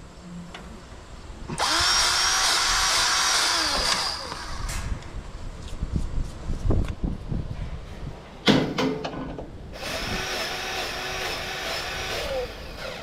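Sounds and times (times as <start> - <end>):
grease gun motor whining: 1.6 - 4.9, 9.8 - 13.0.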